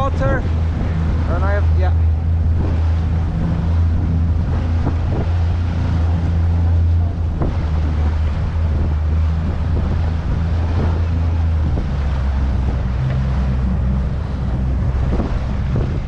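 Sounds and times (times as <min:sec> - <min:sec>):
outboard motor running: 0:00.0 - 0:16.0
wind buffeting microphone: 0:00.0 - 0:16.0.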